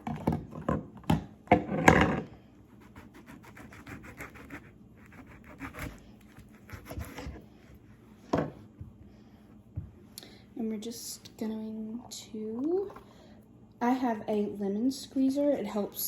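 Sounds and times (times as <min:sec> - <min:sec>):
knife rasping through lemon: 0:02.7 - 0:08.0.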